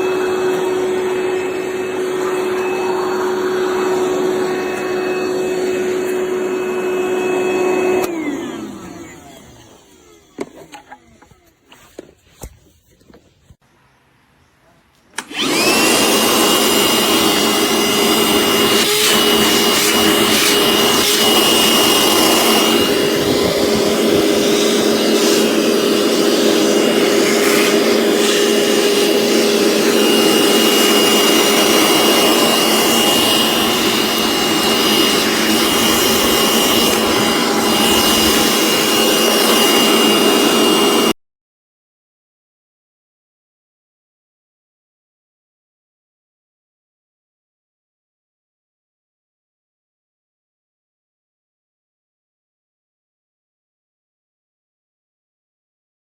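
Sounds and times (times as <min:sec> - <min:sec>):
vacuum cleaner whining: 0:00.0 - 0:13.2, 0:15.1 - 0:41.2.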